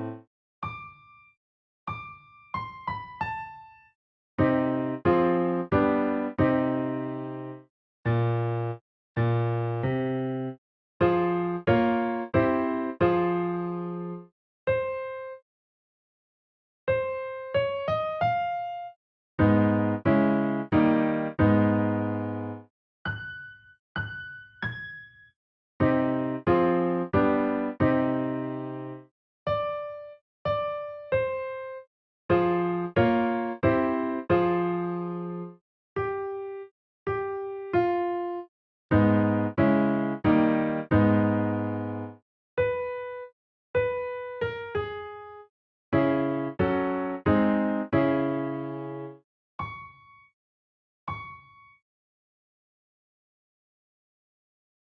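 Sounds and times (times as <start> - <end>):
electric piano notes and chords: 0.0 - 1.2, 1.9 - 3.8, 4.4 - 15.4, 16.9 - 25.2, 25.8 - 50.2, 51.1 - 51.6.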